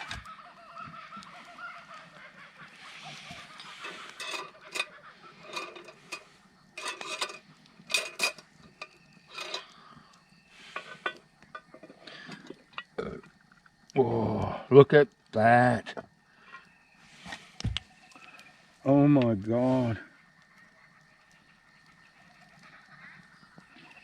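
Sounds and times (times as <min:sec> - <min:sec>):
geese honking: 0:00.0 - 0:08.0, 0:19.7 - 0:24.0
metal cookware clinking: 0:03.6 - 0:09.8.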